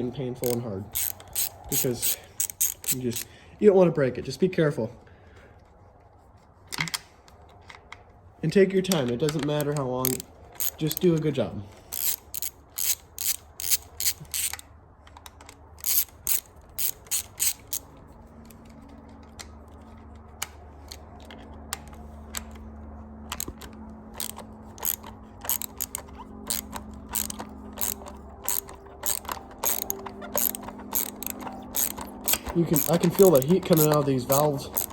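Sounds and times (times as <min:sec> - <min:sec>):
socket ratchet clicking: 0:00.4 - 0:03.3, 0:08.9 - 0:18.7, 0:20.3 - 0:34.9.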